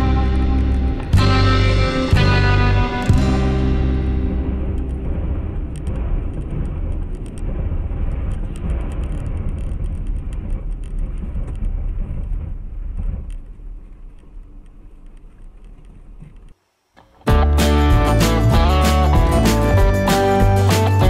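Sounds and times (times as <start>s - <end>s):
car engine and road rumble: 0.0s - 16.6s.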